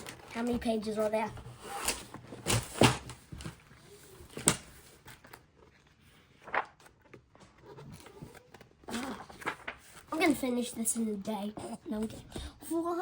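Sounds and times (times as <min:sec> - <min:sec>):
faint paper rustling: 0:00.0 - 0:12.5
paper pages flicking: 0:06.4 - 0:10.1.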